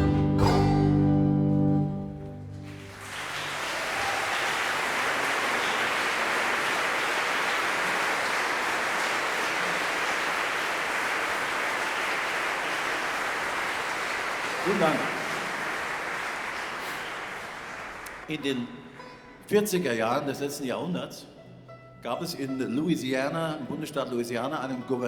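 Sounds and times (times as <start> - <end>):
bluegrass band chord: 0.0 - 2.9
audience applause: 2.5 - 18.4.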